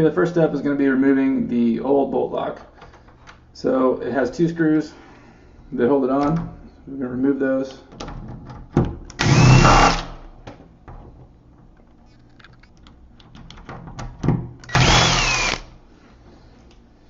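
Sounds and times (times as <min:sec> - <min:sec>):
power drill motor whine: 0:09.2 - 0:10.0, 0:14.7 - 0:15.7.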